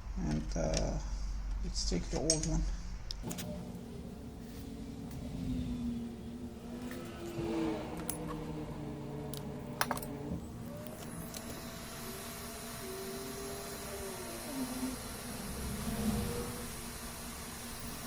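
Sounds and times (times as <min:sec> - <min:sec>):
hot-air blower whirring: 0:03.6 - 0:18.0.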